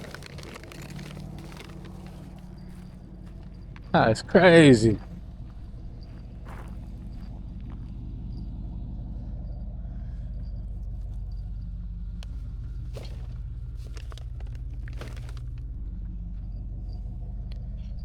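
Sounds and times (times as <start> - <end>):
light rustles and clicks: 0.0 - 3.9, 12.2 - 15.6
vehicle engine idling: 0.0 - 17.8.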